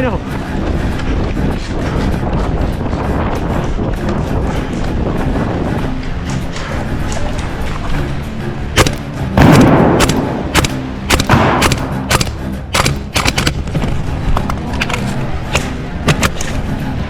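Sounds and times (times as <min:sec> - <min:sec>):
airsoft guns firing: 0:08.8 - 0:13.8, 0:14.4 - 0:16.6.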